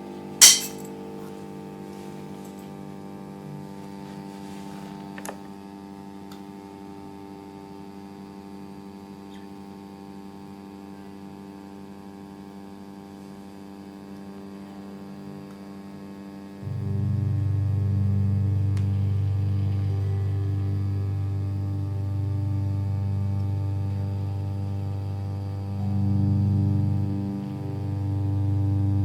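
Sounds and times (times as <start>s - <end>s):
electric hum drone music: 16.3s - 29.0s
loud low drone: 16.6s - 29.0s.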